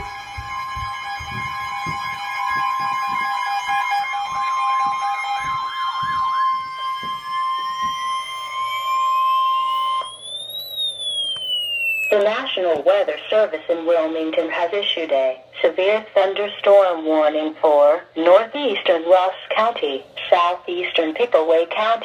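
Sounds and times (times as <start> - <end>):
low thumps: 0.0 - 8.2
two-tone alert signal: 0.0 - 12.2
siren-like warbles: 0.0 - 12.4
rising tone sweep: 3.5 - 12.2.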